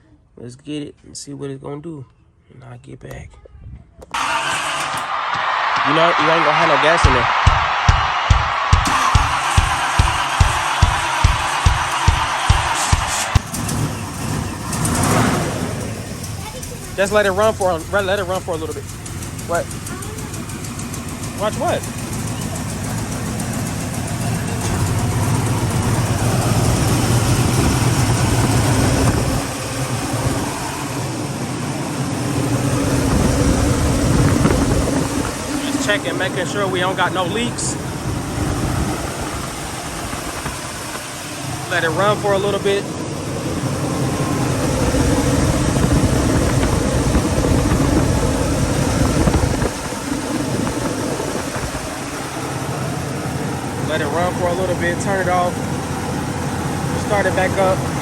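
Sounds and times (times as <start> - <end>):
car engine idling: 4.2 - 5.1, 5.8 - 58.0.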